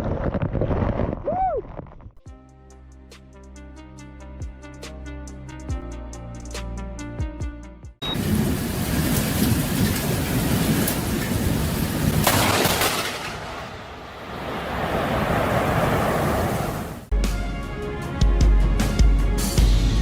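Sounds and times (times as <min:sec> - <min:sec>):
rushing roar of storm: 0:13.8 - 0:17.1.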